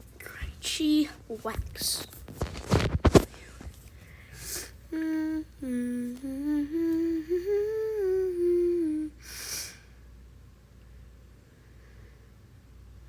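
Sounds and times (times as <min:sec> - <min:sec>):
person humming a tune: 0:04.4 - 0:09.8.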